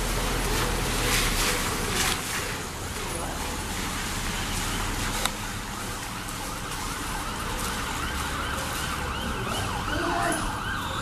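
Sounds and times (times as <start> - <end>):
emergency siren yelping: 4.3 - 11.0.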